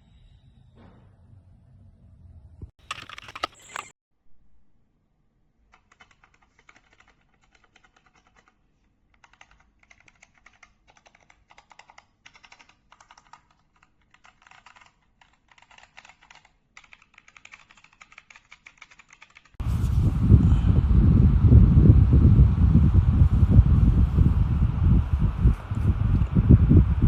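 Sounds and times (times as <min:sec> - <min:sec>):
mechanical keyboard typing: 0:02.8 - 0:03.9, 0:05.7 - 0:08.6, 0:09.2 - 0:19.6.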